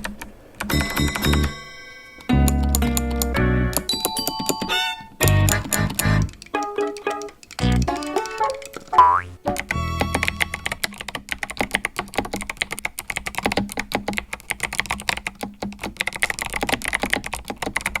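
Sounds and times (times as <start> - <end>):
fast mechanical keyboard typing: 9.6 - 18.0.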